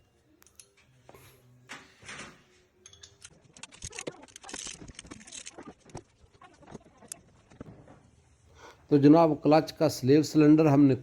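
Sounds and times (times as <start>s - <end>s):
metal tools clinking on bolts: 2.8s - 3.3s.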